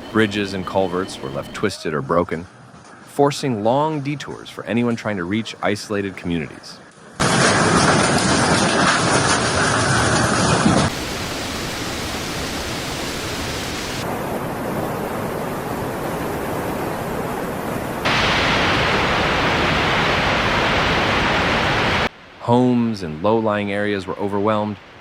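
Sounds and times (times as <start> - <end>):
rushing water: 8.6 - 25.0.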